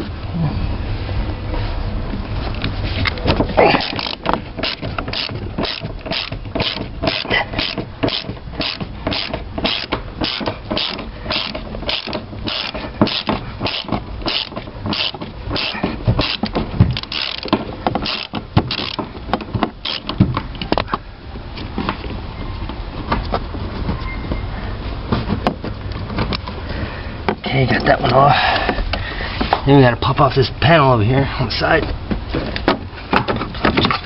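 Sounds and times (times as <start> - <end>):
ratchet wrench clicking: 3.9 - 19.0, 19.8 - 20.2.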